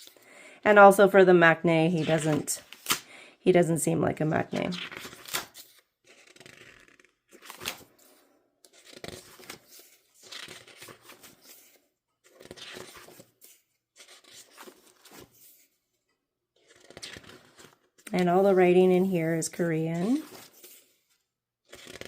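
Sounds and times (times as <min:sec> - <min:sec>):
packaging rustling and tearing: 0:04.8 - 0:08.1, 0:08.7 - 0:15.6.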